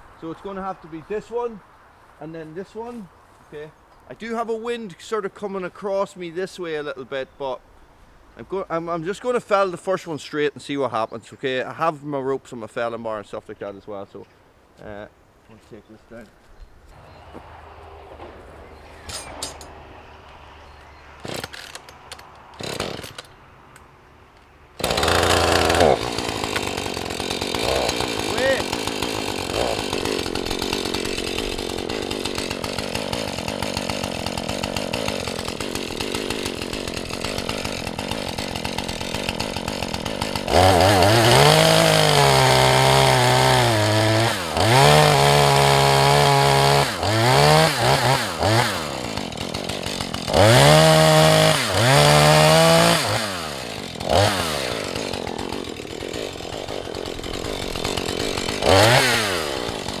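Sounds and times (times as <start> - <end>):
chainsaw idling and revving: 17.0 - 23.4, 24.8 - 60.0.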